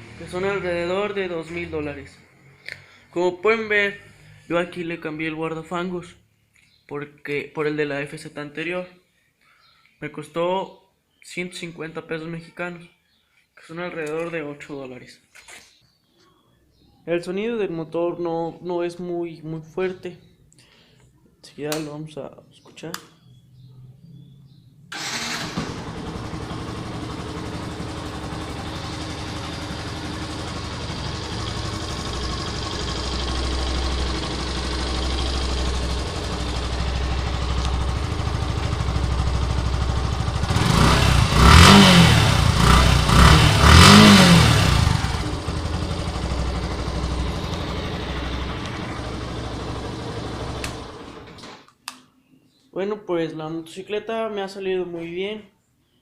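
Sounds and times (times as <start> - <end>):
motorcycle engine idling and revving: 0.0 - 2.5, 25.0 - 51.4.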